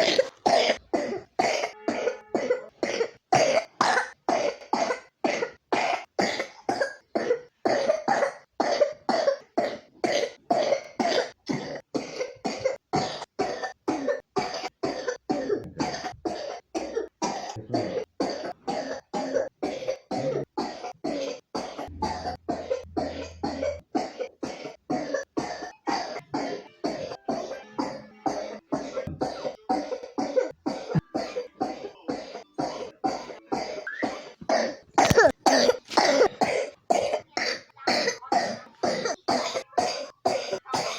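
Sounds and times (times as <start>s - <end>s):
child coughing: 0.0s - 40.9s.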